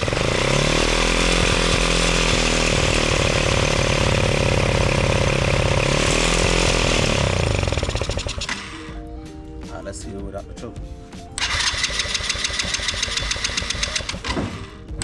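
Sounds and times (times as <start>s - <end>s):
small two-stroke engine running: 0.0s - 8.9s, 11.4s - 14.9s.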